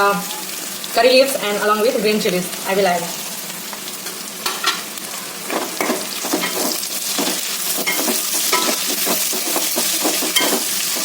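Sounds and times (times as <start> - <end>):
leaves sizzling in hot oil: 0.0 - 11.0
spoon scraping pan: 5.5 - 11.0.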